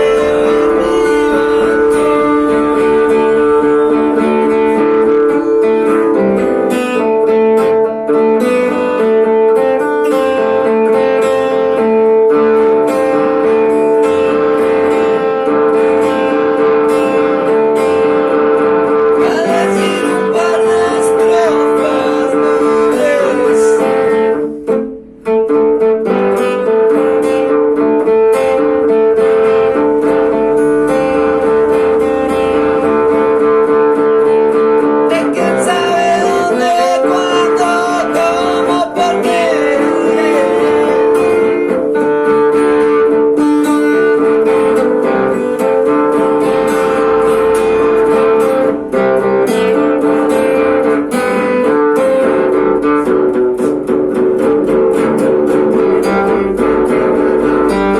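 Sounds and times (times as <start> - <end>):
plucked and strummed guitar: 0.0 - 57.9.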